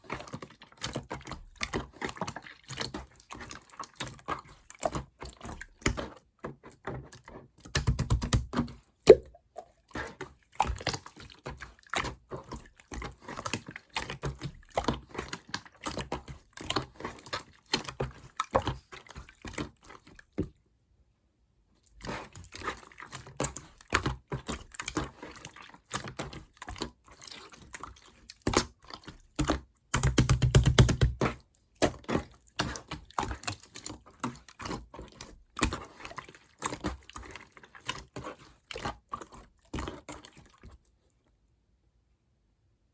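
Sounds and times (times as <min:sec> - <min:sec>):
slime squishing: 0:00.0 - 0:20.6, 0:21.8 - 0:41.3
slime clicking and popping: 0:09.1 - 0:09.4.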